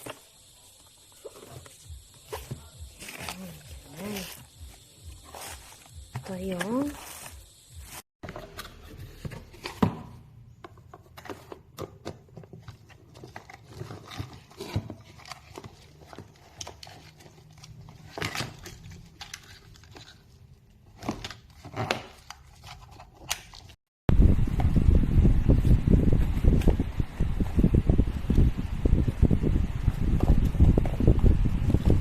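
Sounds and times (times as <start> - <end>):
objects being handled: 0.0 - 23.8.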